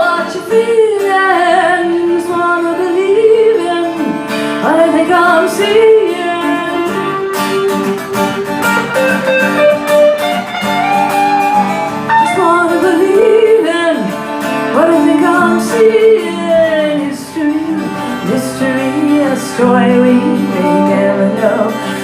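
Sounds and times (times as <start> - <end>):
acoustic guitar playing: 0.0 - 22.0
melody line bending in pitch: 6.7 - 13.5.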